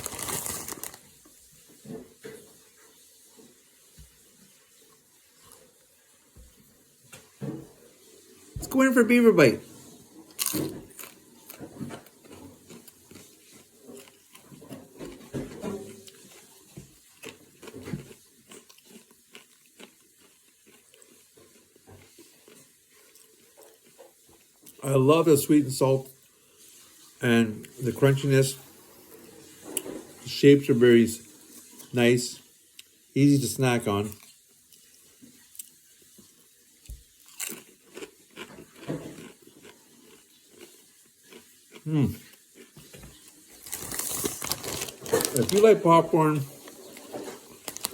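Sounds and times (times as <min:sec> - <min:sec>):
chewing crunches: 0:00.0 - 0:01.0, 0:10.3 - 0:24.8, 0:36.8 - 0:45.8, 0:46.5 - 0:47.9
person crunching chip: 0:00.0 - 0:01.1, 0:10.3 - 0:11.6, 0:17.2 - 0:21.2, 0:37.1 - 0:42.7, 0:43.6 - 0:46.1, 0:46.9 - 0:47.9.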